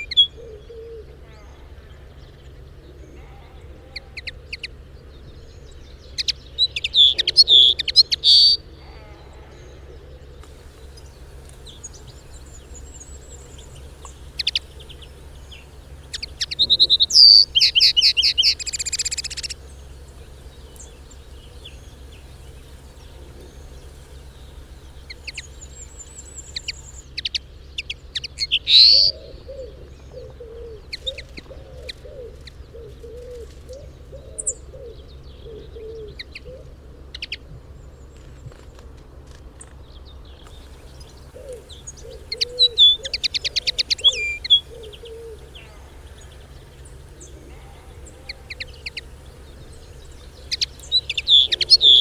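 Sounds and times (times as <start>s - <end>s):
short bird calls: 7.0s - 9.8s, 10.4s - 27.1s, 40.4s - 52.0s
bird high-pitched chattering: 7.4s - 8.6s, 10.4s - 27.0s, 40.6s - 52.0s.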